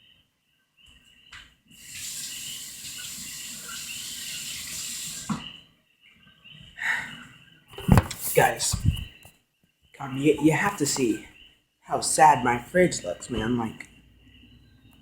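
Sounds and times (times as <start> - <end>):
water running from a tap: 1.8 - 5.4.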